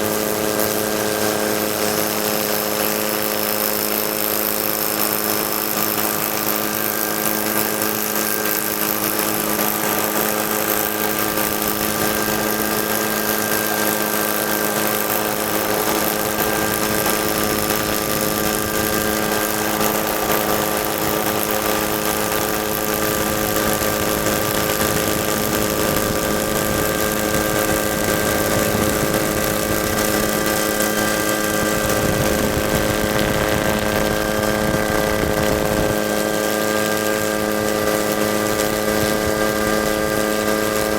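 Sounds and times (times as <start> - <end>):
helicopter running: 0.0 - 40.9.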